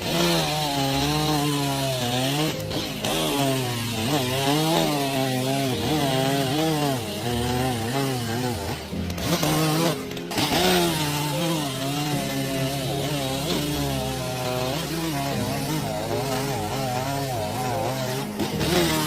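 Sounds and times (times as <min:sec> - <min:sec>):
chainsaw cutting wood: 0:00.0 - 0:19.0.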